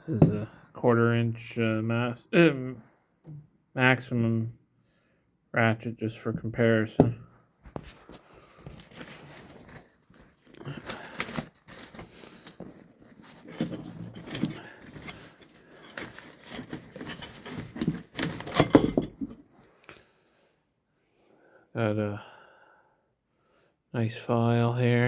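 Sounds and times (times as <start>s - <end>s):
tools clattering: 11.1s - 19.5s
metal hand tools clinking: 13.3s - 19.4s.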